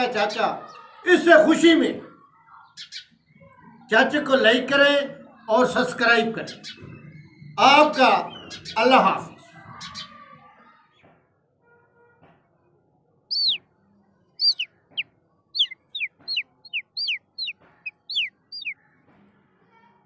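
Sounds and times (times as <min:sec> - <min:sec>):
bird whistling downward notes: 0:13.3 - 0:13.6, 0:14.4 - 0:14.7, 0:15.6 - 0:18.8.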